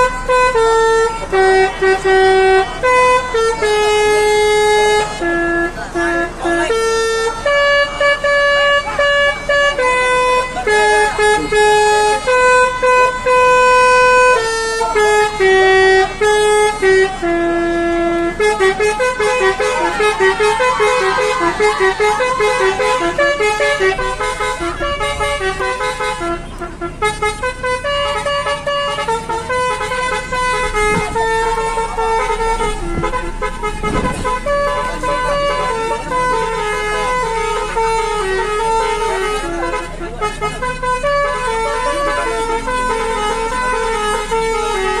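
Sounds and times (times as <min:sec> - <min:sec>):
musical air horn playing a tune: 0:00.0 - 0:45.0.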